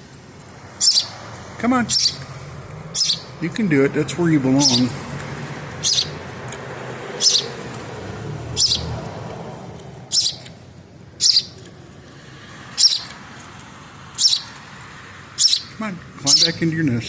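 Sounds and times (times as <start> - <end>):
young bird chirping: 0.8 - 1.2, 1.9 - 2.3, 2.9 - 3.4, 4.6 - 5.0, 5.8 - 6.2, 7.2 - 7.6, 8.5 - 9.0, 10.1 - 10.6, 11.2 - 11.6, 12.8 - 13.2, 14.2 - 14.6, 15.4 - 16.6.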